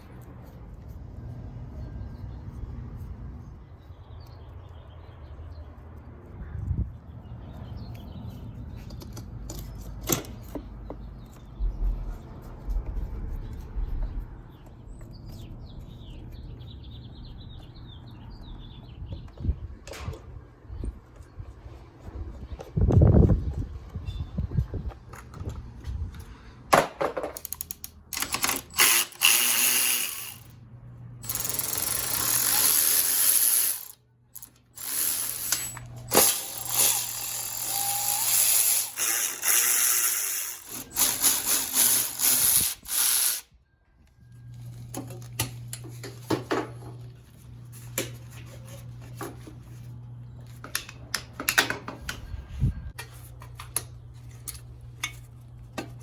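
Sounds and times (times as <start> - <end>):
hand tools clicking on metal: 27.4 - 30.6, 31.2 - 43.5
handheld power tool running: 28.1 - 30.6, 31.2 - 43.5.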